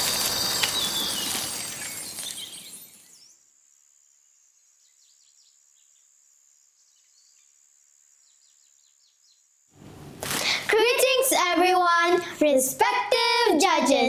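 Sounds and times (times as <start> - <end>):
faint bird chirps: 0.0 - 3.4.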